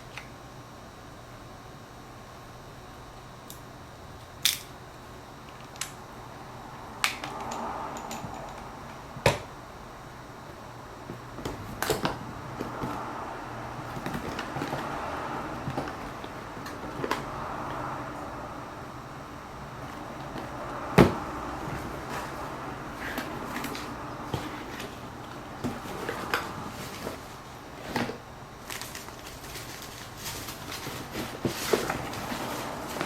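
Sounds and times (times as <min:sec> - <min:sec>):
rustling of packaging: 0:21.6 - 0:33.0.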